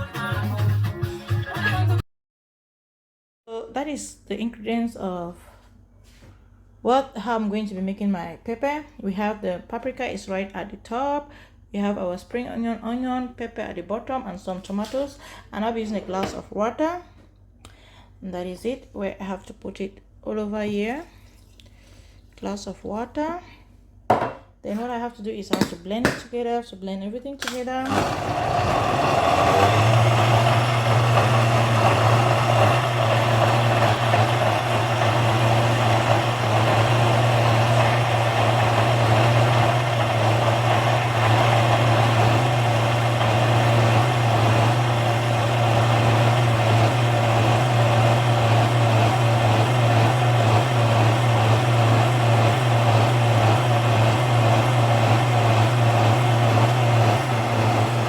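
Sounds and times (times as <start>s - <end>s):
electric blender running: 27.8s - 58.0s.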